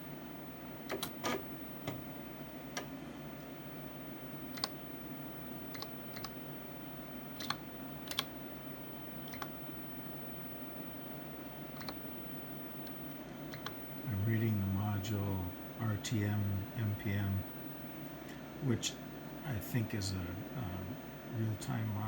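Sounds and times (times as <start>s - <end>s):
steady low hum: 0.0s - 22.0s
computer keyboard keystrokes: 4.5s - 4.8s, 5.7s - 6.4s, 7.4s - 8.3s, 9.2s - 9.6s, 11.8s - 12.0s, 12.8s - 13.8s.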